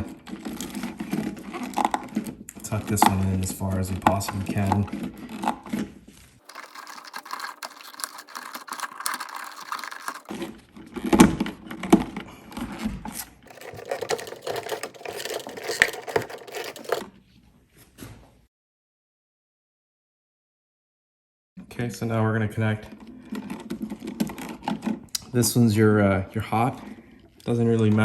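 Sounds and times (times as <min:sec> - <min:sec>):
electrical wires rustling: 0:00.0 - 0:11.4, 0:12.1 - 0:17.2
clicks and scrapes: 0:00.0 - 0:17.2, 0:22.9 - 0:25.4.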